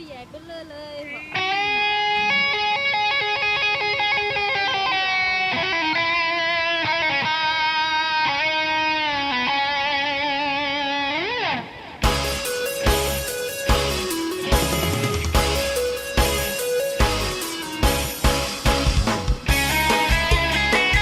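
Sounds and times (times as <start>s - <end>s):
electric guitar melody: 0.0s - 21.0s
drums: 12.0s - 21.0s.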